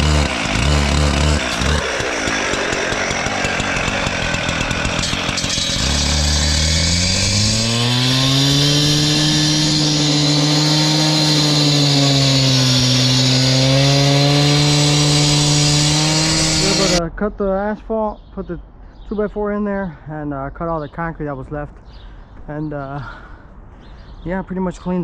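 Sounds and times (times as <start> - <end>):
cut-off saw engine revving: 0.0 - 17.0.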